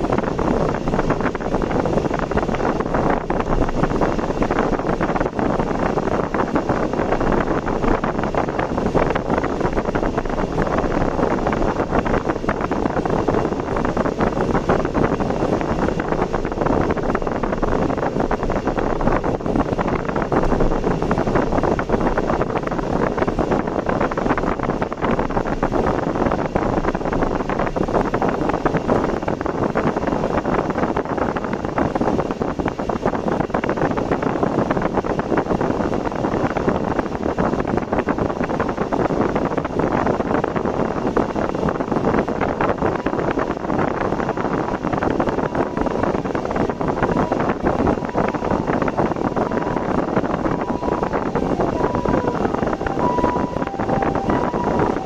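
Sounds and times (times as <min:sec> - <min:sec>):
car road and wind noise: 0:00.0 - 0:55.0
faint steady tone: 0:49.4 - 0:55.0.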